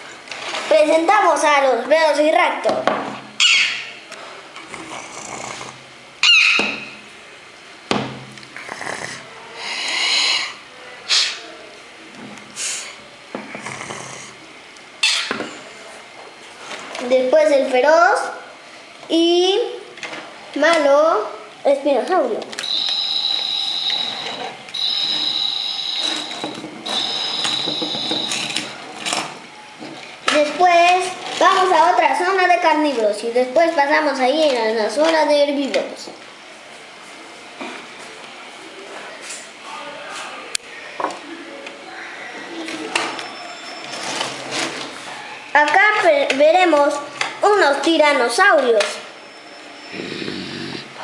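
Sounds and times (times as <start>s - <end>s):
mechanism high-pitched whine: 0.0s - 51.0s
child imitating dinosaur screeches: 9.6s - 11.4s.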